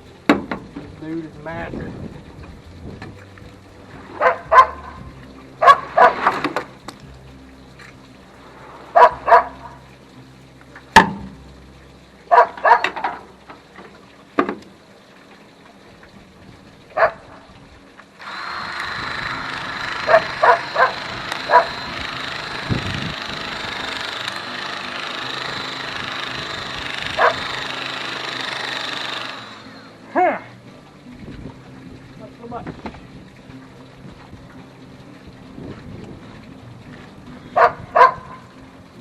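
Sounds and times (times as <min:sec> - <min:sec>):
steady hissing noise: 0:00.0 - 0:37.7
dog barking: 0:04.2 - 0:05.0, 0:05.6 - 0:06.3, 0:09.0 - 0:09.8, 0:12.3 - 0:13.0, 0:17.0 - 0:17.3, 0:20.0 - 0:21.8, 0:27.2 - 0:27.4, 0:37.6 - 0:38.4.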